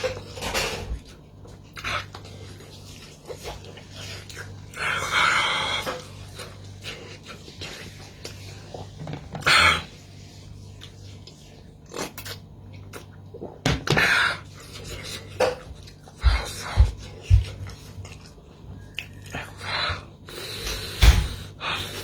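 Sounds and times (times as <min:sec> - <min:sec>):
chewing: 0:01.1 - 0:09.0, 0:10.7 - 0:13.5, 0:14.6 - 0:21.0.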